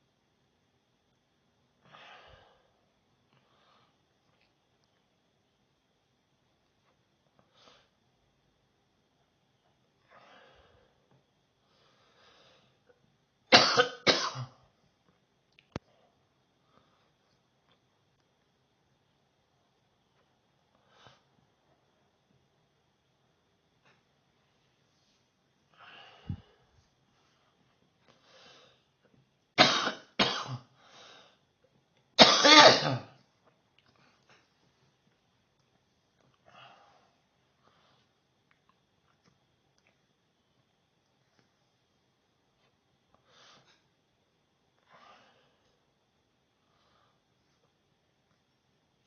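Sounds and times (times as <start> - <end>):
person coughing: 13.5 - 14.6, 29.6 - 30.7, 32.2 - 33.2
faint breath in: 25.7 - 26.9.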